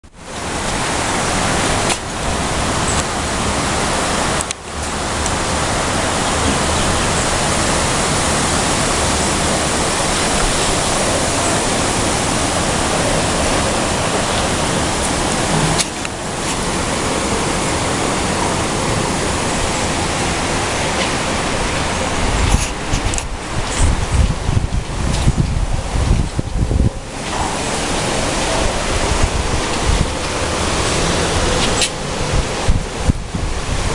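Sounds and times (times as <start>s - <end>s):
strong wind blowing: 0.0s - 33.9s.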